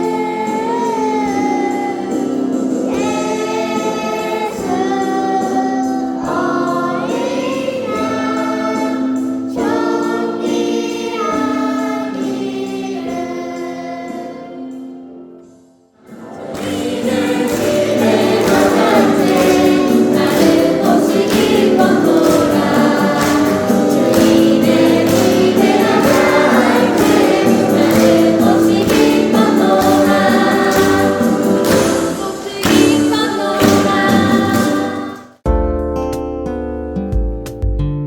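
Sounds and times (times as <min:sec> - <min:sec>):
choir singing a hymn: 0:00.0 - 0:15.1, 0:16.0 - 0:35.4
instrumental accompaniment: 0:15.5 - 0:38.0.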